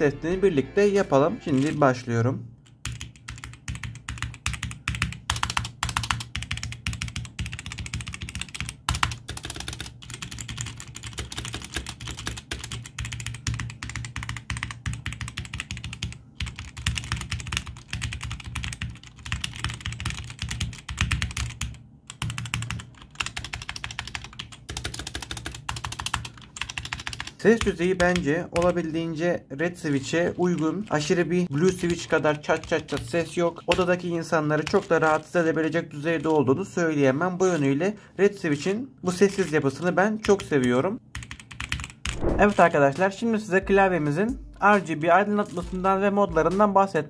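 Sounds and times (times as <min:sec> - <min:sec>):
mechanical keyboard typing: 0:01.5 - 0:01.8, 0:02.6 - 0:28.9, 0:29.9 - 0:36.4, 0:39.3 - 0:42.7.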